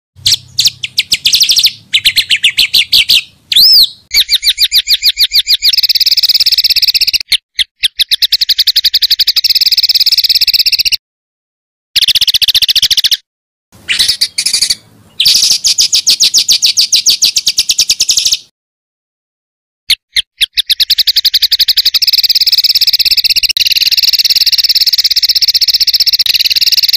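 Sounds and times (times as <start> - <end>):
songbird trilling: 0.2 - 11.0, 12.0 - 13.2, 13.8 - 18.5, 19.9 - 26.9
whistled bird note: 0.2 - 11.0, 13.9 - 18.5.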